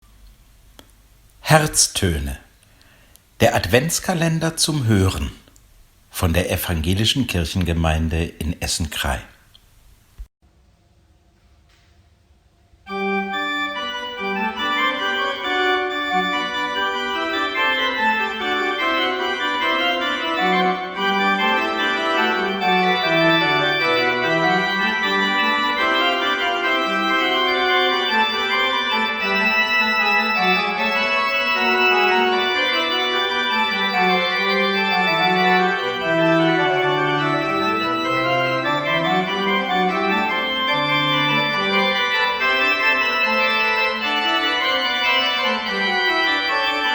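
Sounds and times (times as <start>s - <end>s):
organ music: 1.4s - 2.4s, 3.4s - 5.4s, 12.9s - 46.9s.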